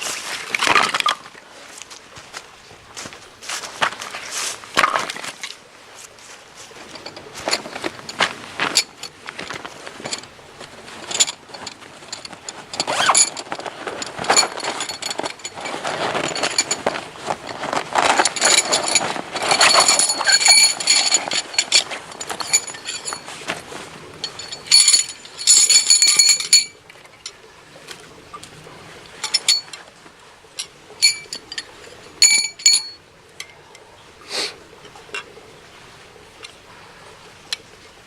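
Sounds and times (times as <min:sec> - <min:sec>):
metal parts clattering: 0:06.8 - 0:27.4, 0:29.2 - 0:29.8, 0:30.6 - 0:33.0
metallic ringing: 0:18.2 - 0:23.3, 0:24.2 - 0:27.4, 0:30.6 - 0:33.5.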